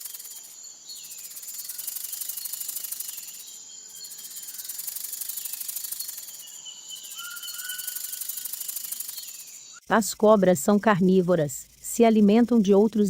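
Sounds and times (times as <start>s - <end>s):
faint bird chirps: 0.0s - 9.8s
rattlesnake rattling: 0.0s - 13.0s.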